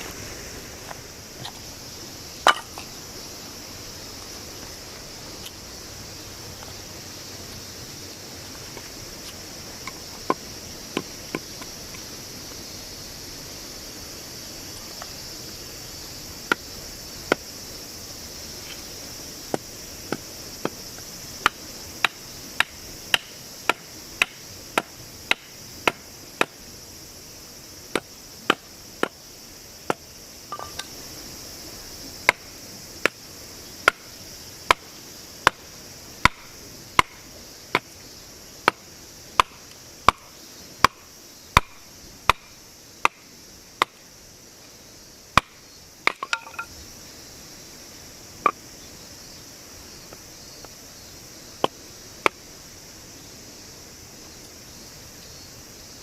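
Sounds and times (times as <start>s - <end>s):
firewood being chopped: 2.4s - 2.9s, 21.4s - 26.6s, 27.9s - 29.2s, 33.8s - 34.0s, 36.2s - 37.9s, 39.4s - 41.0s, 41.6s - 43.2s, 45.4s - 46.7s.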